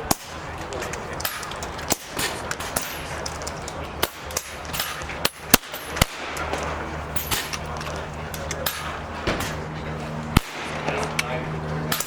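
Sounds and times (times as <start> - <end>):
air rifle cracks: 10.4 - 12.0.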